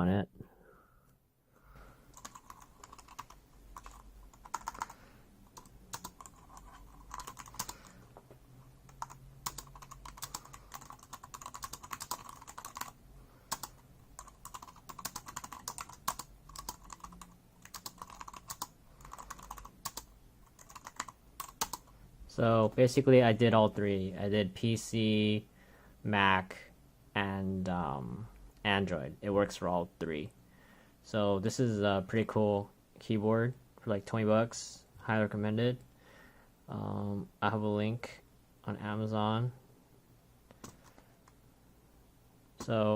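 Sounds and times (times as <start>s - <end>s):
typing on keyboard key clicks: 2.2s - 4.9s, 5.5s - 7.8s, 8.9s - 12.9s, 13.5s - 21.8s.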